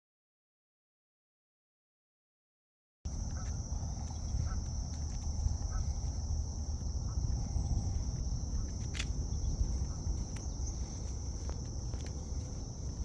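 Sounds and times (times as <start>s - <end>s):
crickets droning: 3.1s - 13.0s
low rumble: 3.1s - 13.0s.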